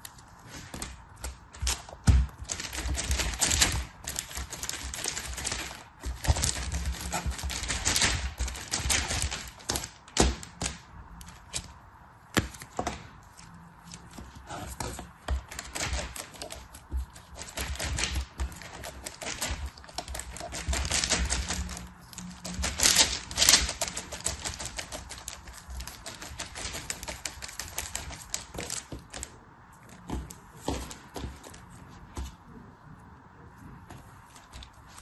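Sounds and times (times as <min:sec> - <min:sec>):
packaging crinkling and clicking: 0:13.9 - 0:31.6.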